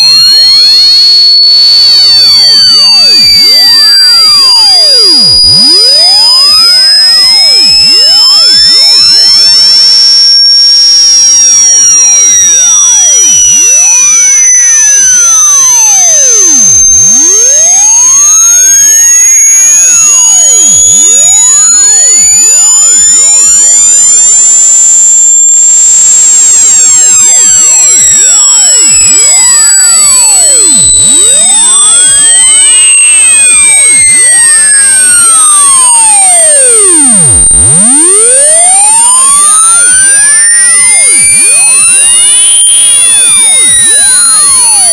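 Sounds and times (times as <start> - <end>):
distorted high-pitched electronic tone: 0.0 - 44.9.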